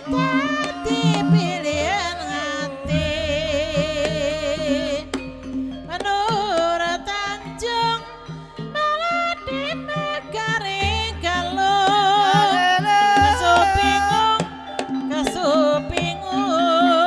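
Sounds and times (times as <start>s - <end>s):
person singing wavering melody: 0.0s - 17.0s
traditional percussion and instruments: 0.0s - 17.0s.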